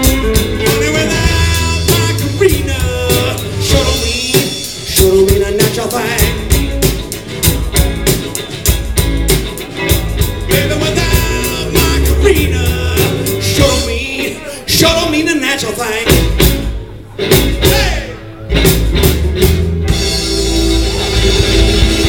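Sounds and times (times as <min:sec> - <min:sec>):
person singing: 0:00.0 - 0:06.7, 0:10.4 - 0:16.2
drum strokes: 0:00.0 - 0:14.0, 0:18.5 - 0:22.0
bass line: 0:00.0 - 0:22.0
blues band playing: 0:00.0 - 0:22.0.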